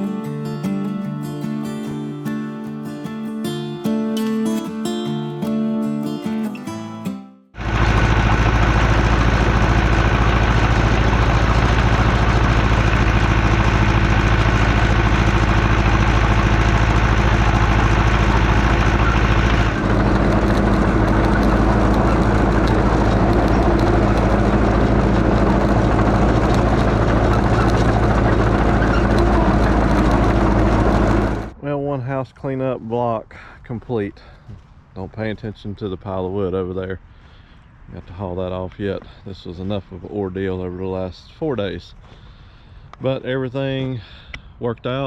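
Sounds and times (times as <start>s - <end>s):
loader engine running: 0.0s - 31.6s.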